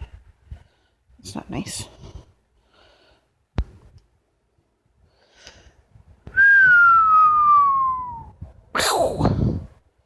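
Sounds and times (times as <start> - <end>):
parrot whistle sliding downward: 6.4 - 8.4.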